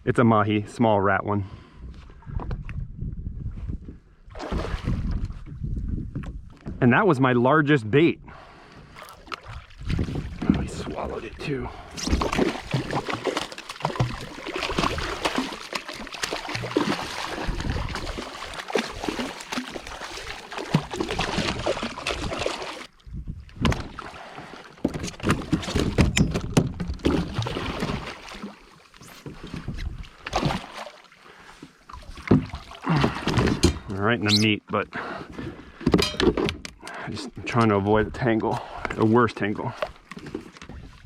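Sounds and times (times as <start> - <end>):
water sloshing against kayak: 8.4 - 37.6, 38.6 - 41.0
knocks and rattles: 35.9 - 36.7.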